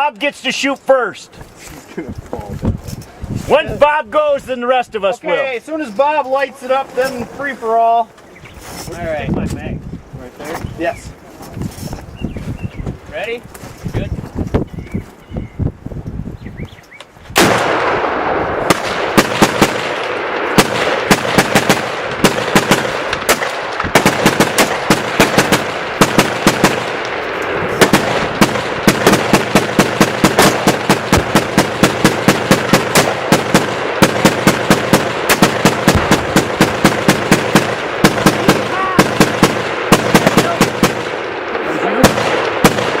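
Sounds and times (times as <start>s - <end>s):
rapid gunshots: 17.4s - 43.0s.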